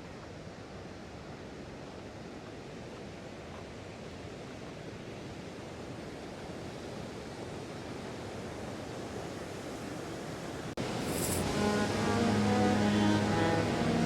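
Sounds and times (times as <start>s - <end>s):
waterfall rushing: 10.7s - 14.0s.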